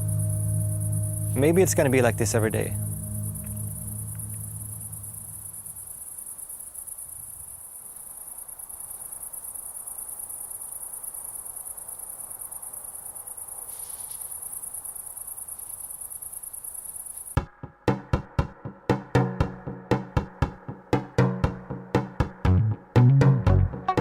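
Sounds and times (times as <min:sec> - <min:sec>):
low sustained music tones: 0:00.0 - 0:06.2
crickets chirring: 0:00.0 - 0:17.4.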